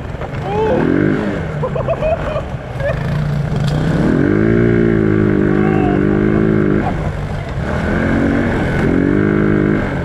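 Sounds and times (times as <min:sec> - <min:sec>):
small engine revving: 0:02.8 - 0:10.0.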